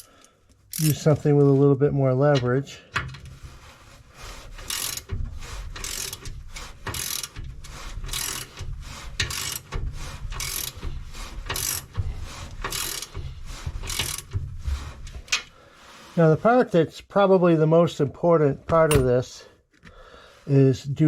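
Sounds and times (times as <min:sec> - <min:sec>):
ratchet wrench clicking: 0:00.7 - 0:01.0, 0:04.6 - 0:05.1, 0:05.8 - 0:07.4, 0:08.1 - 0:08.6, 0:09.2 - 0:09.7, 0:10.4 - 0:10.7, 0:11.5 - 0:12.0, 0:12.6 - 0:13.2, 0:13.8 - 0:14.3.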